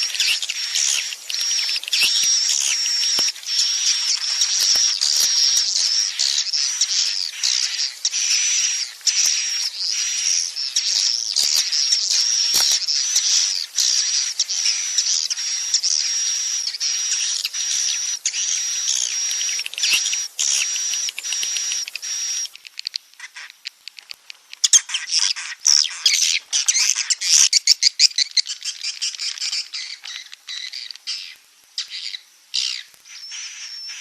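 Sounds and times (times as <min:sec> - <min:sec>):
birds twittering and chittering: 0:00.0 - 0:34.0.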